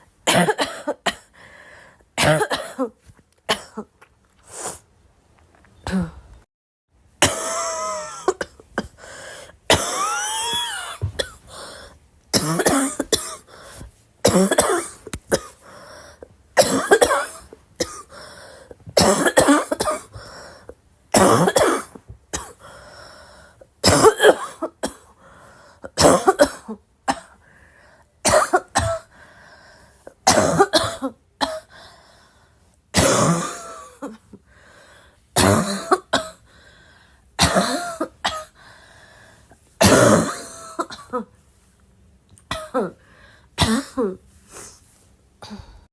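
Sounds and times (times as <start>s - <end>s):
girl coughing: 0.3s - 1.3s, 2.2s - 3.9s, 7.2s - 9.0s, 9.7s - 11.5s, 12.4s - 13.5s, 14.2s - 15.6s, 16.6s - 18.1s, 19.0s - 20.1s, 21.2s - 22.6s, 23.8s - 25.1s, 26.0s - 27.4s, 28.2s - 29.1s, 30.3s - 31.7s, 33.0s - 34.2s, 35.4s - 36.4s, 37.4s - 38.6s, 39.8s - 41.3s, 42.5s - 43.0s, 43.6s - 44.2s.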